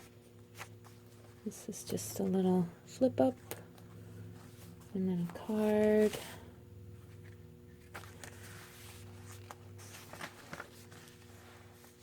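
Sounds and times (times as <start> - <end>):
faint steady hum: 0.0 - 12.0
paper rustling and tapping: 7.2 - 12.0.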